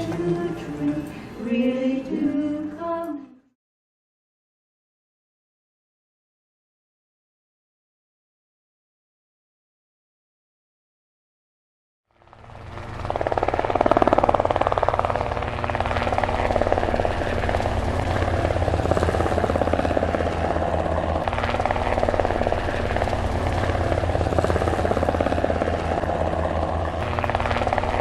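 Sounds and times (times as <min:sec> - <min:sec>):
pulsing mechanical drone: 0:12.1 - 0:28.0.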